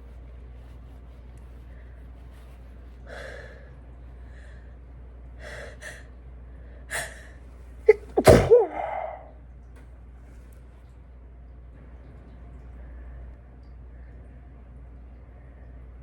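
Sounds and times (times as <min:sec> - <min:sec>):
woman sneezing: 0:07.9 - 0:09.3.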